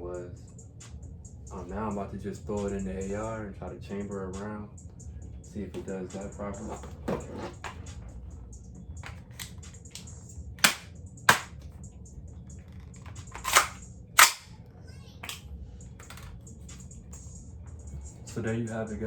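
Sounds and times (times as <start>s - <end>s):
rifle loading metallic clacks: 9.0s - 11.6s, 12.8s - 14.5s, 15.2s - 15.4s.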